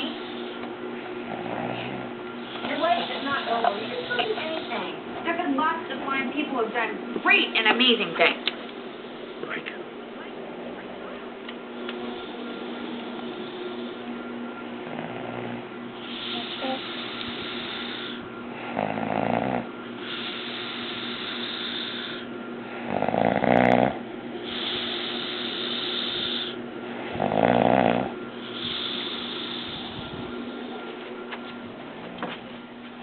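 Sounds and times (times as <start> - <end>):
man snoring: 1.2 - 2.1, 14.8 - 30.3.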